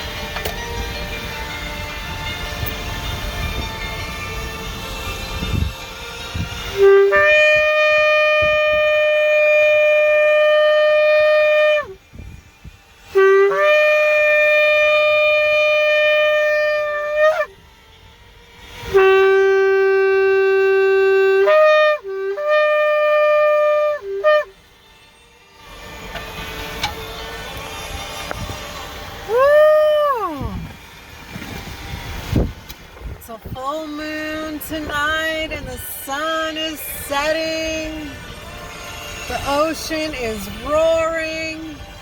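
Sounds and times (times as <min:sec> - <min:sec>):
shofar blasts: 0:04.7 - 0:17.8, 0:18.6 - 0:24.8, 0:33.9 - 0:42.0.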